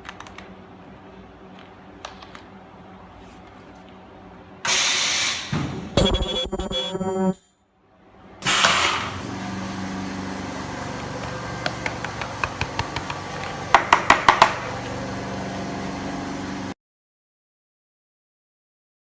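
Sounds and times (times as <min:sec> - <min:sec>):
welding machine hissing burst: 0:06.0 - 0:07.5
machine humming: 0:06.0 - 0:07.6
sharp machine clicks: 0:06.0 - 0:07.6.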